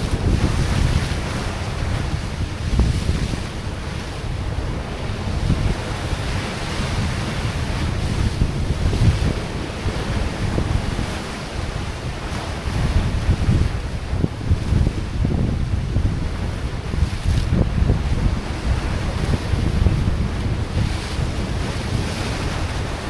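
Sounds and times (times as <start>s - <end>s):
sea waves on rocky shore: 0.0s - 23.0s
wind buffeting microphone: 0.0s - 23.0s.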